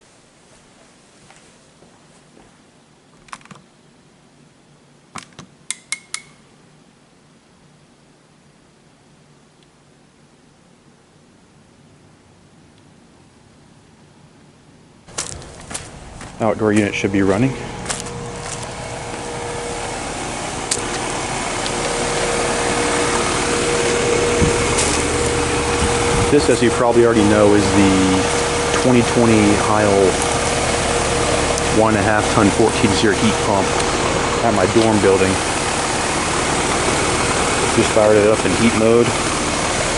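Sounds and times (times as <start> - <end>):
steady hum: 15.0 - 39.9
heat pump fan air rush: 15.1 - 39.9.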